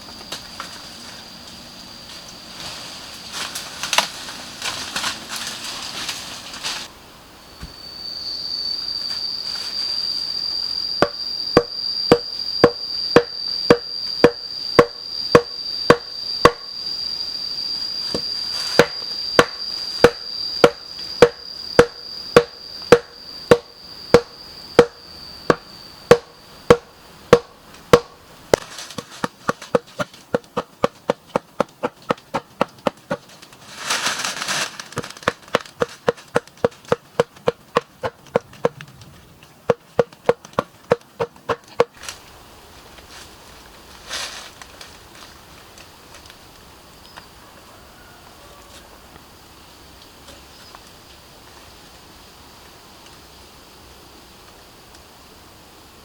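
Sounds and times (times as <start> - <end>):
high-pitched buzz: 7.5 - 29.0
wood being chopped: 11.0 - 16.6, 18.8 - 33.3, 35.0 - 38.8, 39.7 - 42.0.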